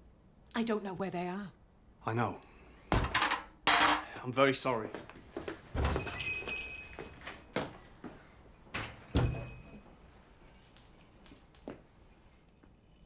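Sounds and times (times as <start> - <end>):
door bell ringing: 5.8 - 7.6, 9.1 - 9.9
shop door knocking shut: 9.1 - 9.6.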